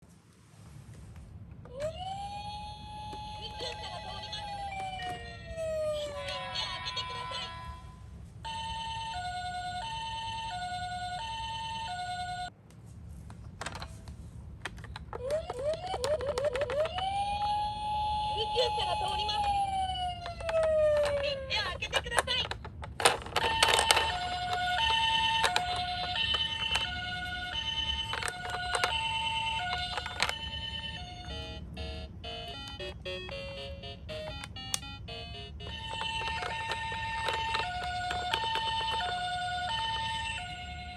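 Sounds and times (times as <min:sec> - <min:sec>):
toy two-tone siren: 0:01.8 - 0:07.8, 0:08.5 - 0:12.5, 0:15.4 - 0:21.8, 0:23.1 - 0:40.9
electronic tune of short notes: 0:31.2 - 0:35.9.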